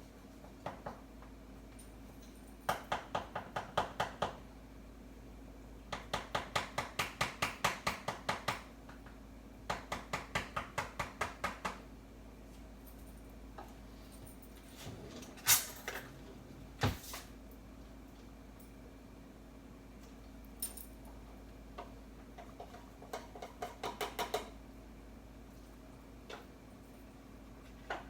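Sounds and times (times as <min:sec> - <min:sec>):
low steady hum: 0:11.8 - 0:23.5.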